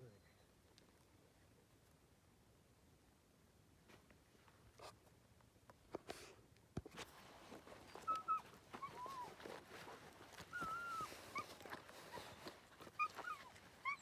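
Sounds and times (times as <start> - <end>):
faint rustling: 6.9 - 14.0
puppy whining: 7.8 - 9.6, 10.4 - 14.0.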